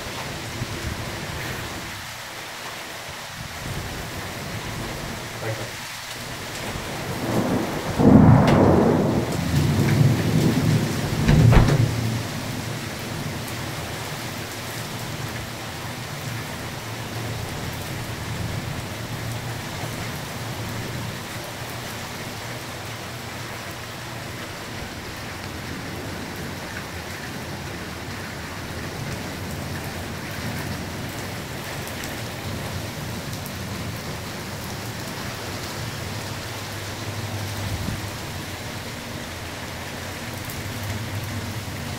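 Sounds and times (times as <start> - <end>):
heavy rain: 0.0 - 41.9
thunder rumbling: 6.5 - 13.6
thunder crack: 6.7 - 12.6.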